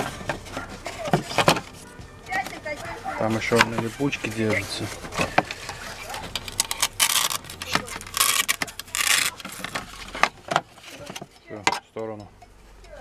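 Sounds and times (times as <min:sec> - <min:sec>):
hook-and-loop fastener tearing: 0:05.6 - 0:10.2.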